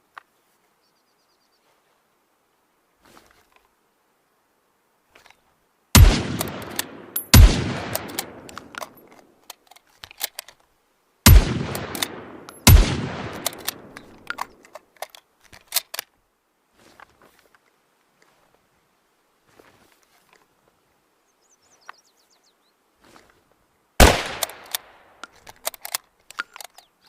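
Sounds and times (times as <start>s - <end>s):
loud rifle shots echoing: 6.0s - 8.7s, 11.2s - 14.3s, 24.0s - 25.2s
small metallic clicks: 6.3s - 10.7s, 11.7s - 16.2s, 24.1s - 27.0s.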